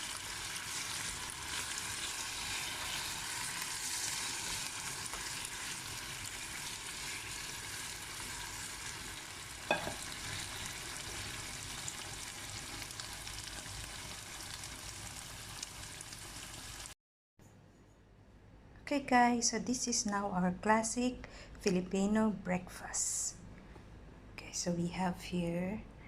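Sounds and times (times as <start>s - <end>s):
food sizzling in a frying pan: 0.0s - 17.0s
sharp knock on the pan: 9.7s - 10.1s.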